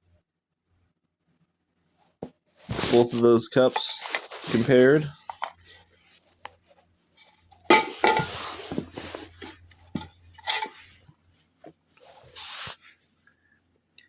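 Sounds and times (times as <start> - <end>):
plastic cups knocking and scraping: 2.7 - 5.8, 7.6 - 11.2.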